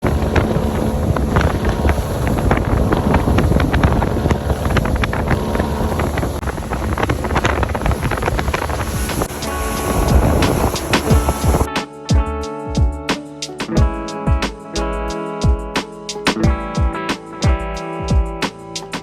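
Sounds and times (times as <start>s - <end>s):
wind buffeting microphone: 0.0s - 11.7s
motorboat engine rumble: 0.0s - 13.1s.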